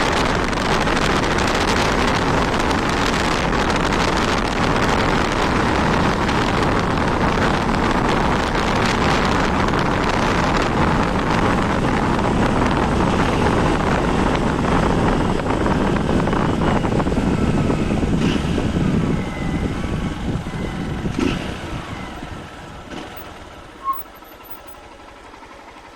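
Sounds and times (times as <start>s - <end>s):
wind noise while riding: 0.0s - 24.8s
motorcycle engine: 0.0s - 25.9s
short beep: 23.8s - 24.6s.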